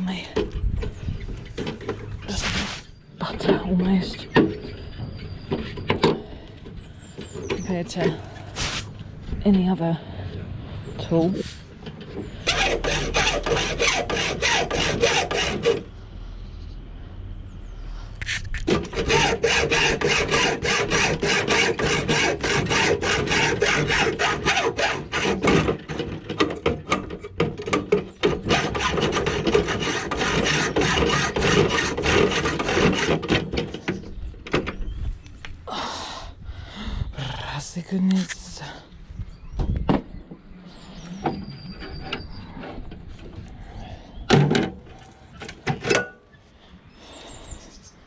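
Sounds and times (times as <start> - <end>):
hand saw cutting metal: 12.4 - 15.9, 18.2 - 33.8.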